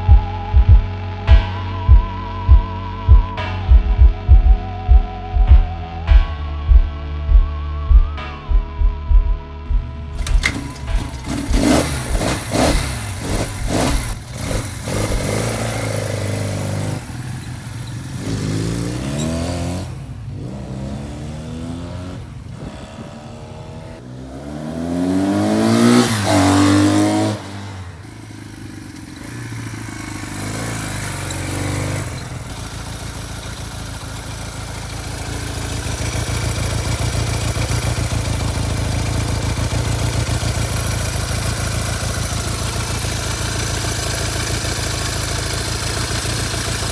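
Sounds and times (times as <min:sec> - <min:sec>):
motorcycle engine idling: 0:09.7 - 0:24.2, 0:25.1 - 0:46.9
motorcycle engine revving: 0:09.8 - 0:46.9.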